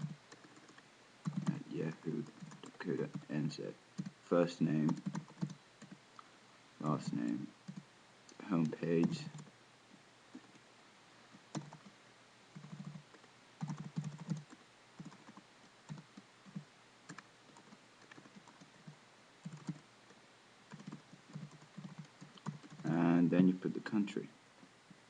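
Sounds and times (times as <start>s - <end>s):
computer keyboard typing: 0.0s - 3.3s, 4.0s - 4.2s, 4.9s - 6.0s, 11.5s - 11.9s, 12.5s - 18.7s, 19.4s - 19.8s, 20.7s - 22.9s.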